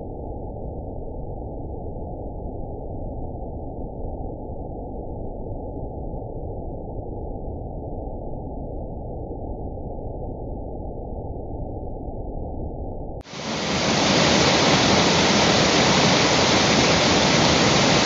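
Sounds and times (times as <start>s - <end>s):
waterfall rushing water: 13.3s - 18.0s.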